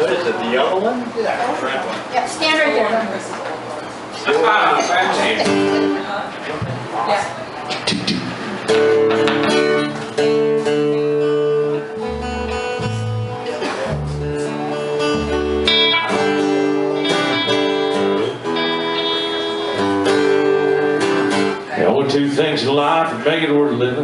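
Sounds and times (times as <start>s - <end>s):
strummed guitar chords: 4.4s - 6.9s, 7.7s - 24.0s
deep bass notes: 7.7s - 23.1s.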